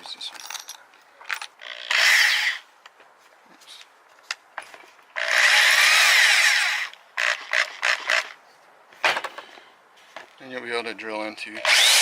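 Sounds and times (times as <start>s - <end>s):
small metal parts clattering: 0.0s - 1.6s
rotary hammer drill running: 5.2s - 8.3s, 11.6s - 12.0s.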